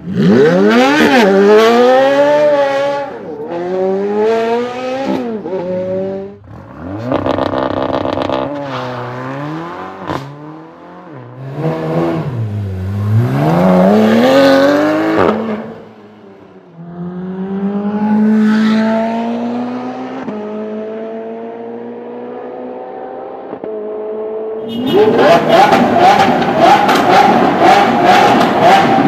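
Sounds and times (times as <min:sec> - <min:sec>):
car engine revving: 0:00.0 - 0:24.1, 0:24.8 - 0:29.0
rough engine with crackling pulses: 0:06.4 - 0:08.6.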